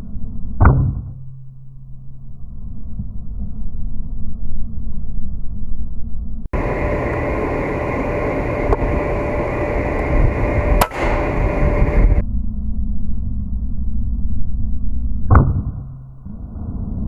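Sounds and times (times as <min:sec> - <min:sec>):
faint steady hum: 0:01.7 - 0:15.3
wind buffeting microphone: 0:06.6 - 0:12.2
air rifle shot: 0:10.8 - 0:11.6.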